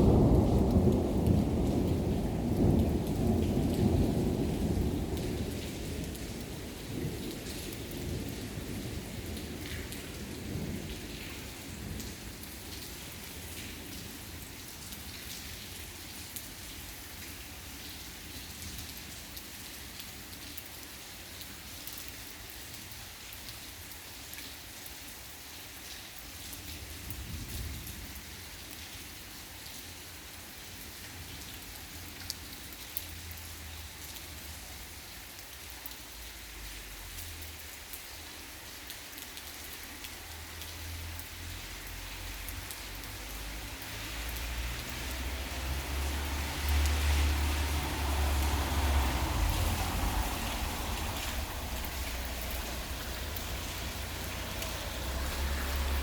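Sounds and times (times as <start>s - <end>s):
thunder rumble: 0.0s - 12.2s, 45.5s - 56.0s
heavy rain pattering: 0.0s - 56.0s.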